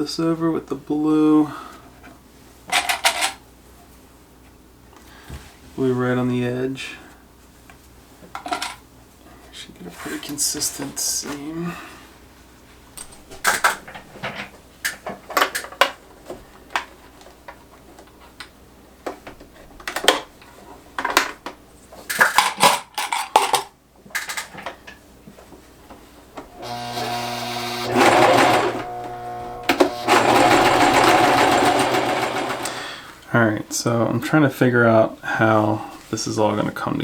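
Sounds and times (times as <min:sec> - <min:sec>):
electric sewing machine running: 0:26.5 - 0:33.0.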